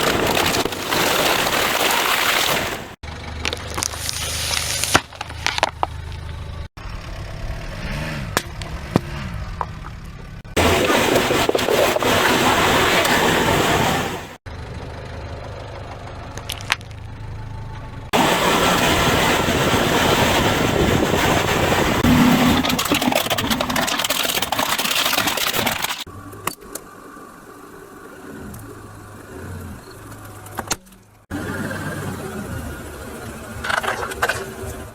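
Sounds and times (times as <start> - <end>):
tyres crushing objects: 0.0 - 6.4, 21.8 - 26.1
car engine running: 2.8 - 34.9.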